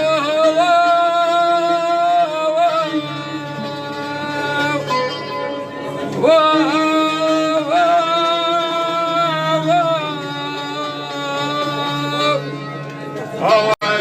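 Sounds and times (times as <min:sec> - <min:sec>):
person singing: 0:00.0 - 0:05.5, 0:06.1 - 0:12.7
instrumental backing: 0:00.0 - 0:14.0.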